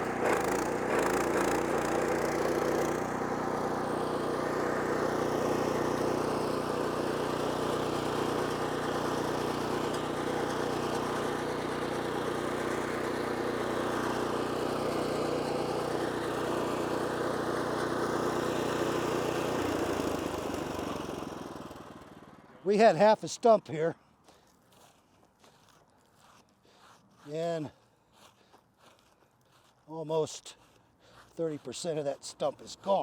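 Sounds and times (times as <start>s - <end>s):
stump grinder engine running: 0.0s - 22.6s.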